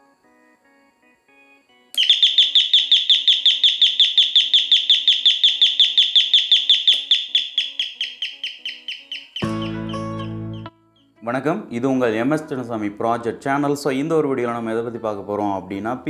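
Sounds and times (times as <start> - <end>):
rapid high electronic chirps: 2.0 - 11.1.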